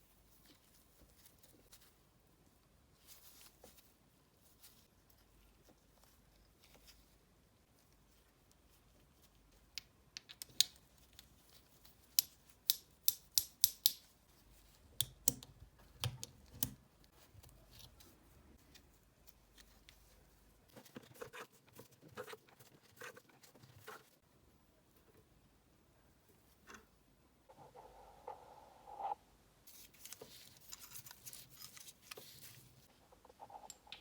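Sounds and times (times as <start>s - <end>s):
small parts and tools clicking: 9.7s - 14.1s, 29.9s - 32.4s.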